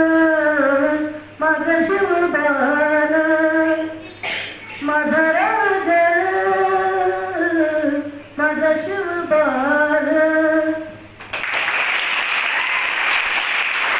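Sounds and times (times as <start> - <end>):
boy singing: 0.0 - 11.0
audience applause: 11.3 - 13.9.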